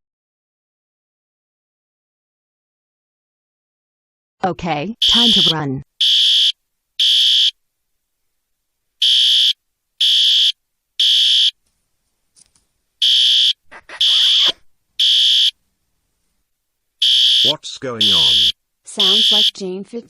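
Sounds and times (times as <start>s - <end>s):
fire alarm beeps: 5.0s - 7.5s, 9.0s - 11.6s, 13.0s - 15.5s, 17.0s - 19.6s.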